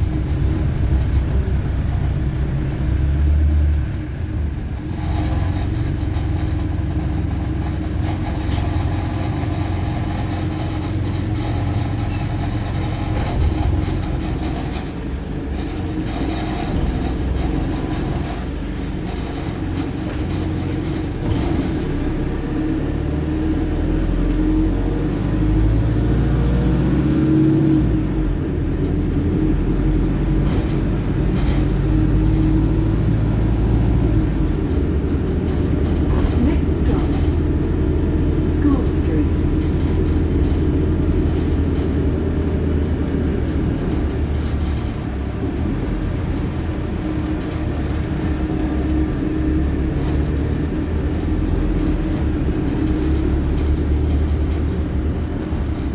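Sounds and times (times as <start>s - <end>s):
bus engine and road drone: 0.0s - 55.9s
drivetrain whine: 31.0s - 43.2s.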